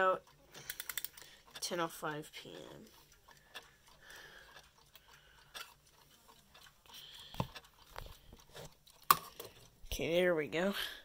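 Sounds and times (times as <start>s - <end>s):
clicks and knocks of handling: 0.6s - 1.3s.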